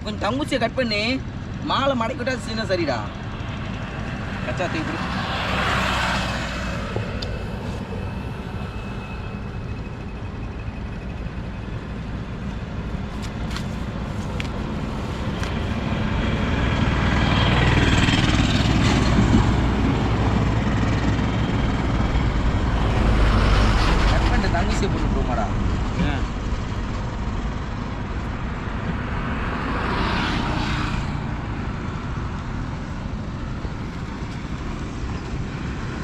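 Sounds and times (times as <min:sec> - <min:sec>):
low rumble of road traffic: 0:00.0 - 0:36.0
vehicle passing: 0:03.1 - 0:09.2, 0:12.9 - 0:26.6, 0:29.0 - 0:36.0.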